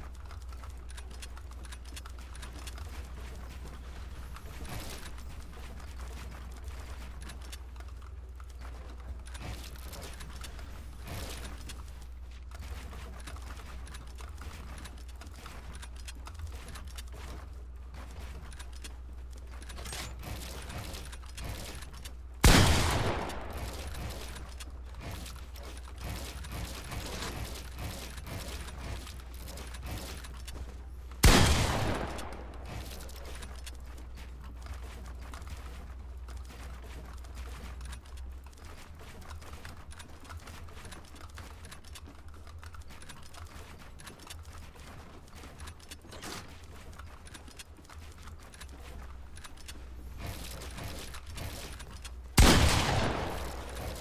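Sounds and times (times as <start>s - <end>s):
steady low hum: 0.0s - 38.7s, 47.9s - 54.0s
faint scattered clicking: 0.0s - 54.0s
loud bangs: 52.4s - 54.0s.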